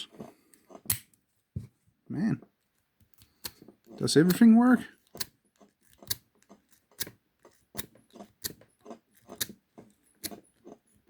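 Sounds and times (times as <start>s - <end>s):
lock pick clicking in padlock: 5.1s - 6.3s.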